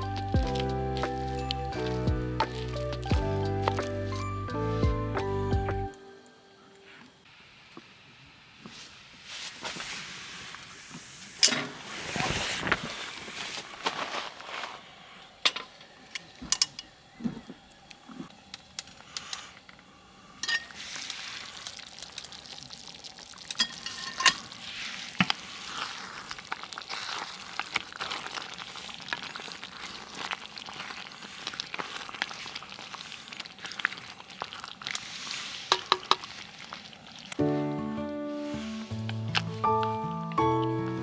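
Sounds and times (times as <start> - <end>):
food sizzling in a pan: 0.0 - 4.8, 20.4 - 37.4
metal utensil clinking: 20.4 - 20.8, 23.6 - 24.5.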